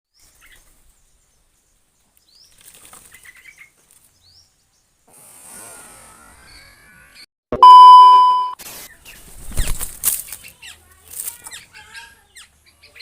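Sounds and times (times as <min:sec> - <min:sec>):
wings fluttering: 0:02.4 - 0:04.2, 0:08.9 - 0:11.7.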